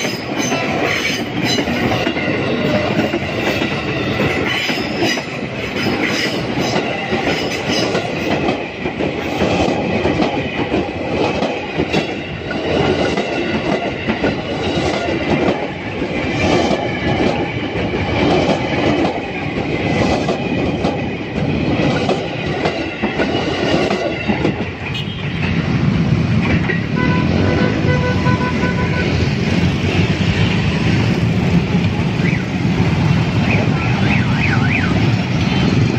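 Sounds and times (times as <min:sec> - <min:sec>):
train wheels clicking over rail joints: 0:00.0 - 0:27.0
road traffic hum: 0:24.7 - 0:35.9.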